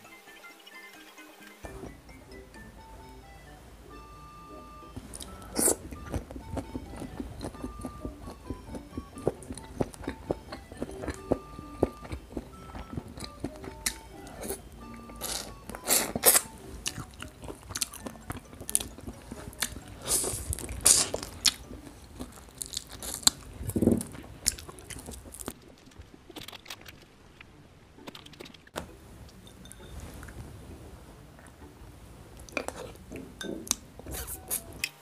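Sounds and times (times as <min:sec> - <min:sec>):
food crunching and crackling: 0:05.0 - 0:28.7, 0:32.4 - 0:35.0.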